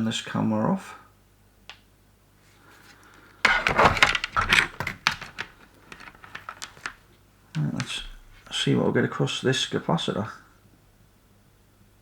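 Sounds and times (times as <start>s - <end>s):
tools clattering on workbench: 3.5s - 6.9s.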